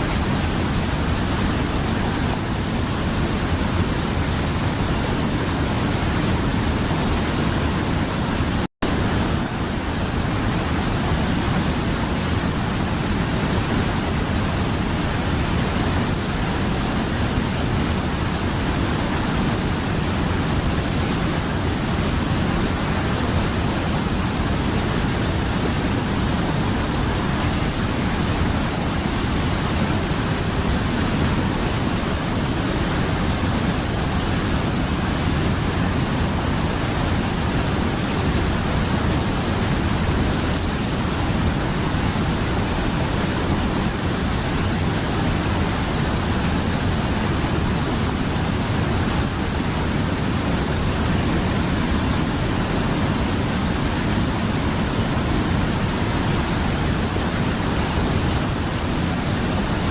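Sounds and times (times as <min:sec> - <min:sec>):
mountain river rushing: 0:00.0 - 0:59.9.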